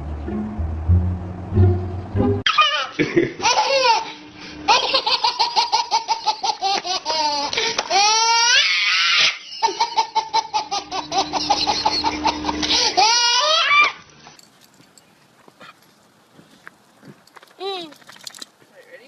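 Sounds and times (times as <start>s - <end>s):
music: 0.0s - 2.5s
high-pitched laughter: 2.5s - 14.0s.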